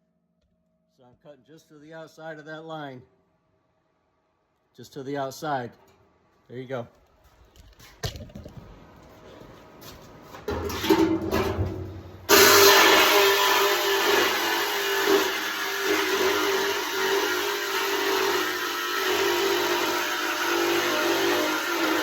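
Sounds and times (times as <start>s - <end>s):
electric saw cutting sheet steel: 12.3s - 22.0s.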